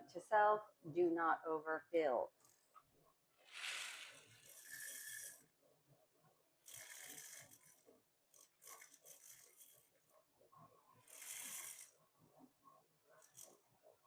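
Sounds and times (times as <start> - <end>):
beads poured into plastic box: 3.5 - 5.3.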